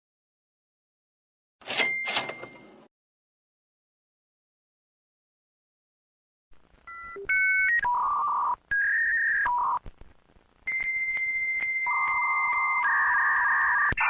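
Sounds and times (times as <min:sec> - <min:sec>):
lower modem tone: 0:10.6 - 0:14.0.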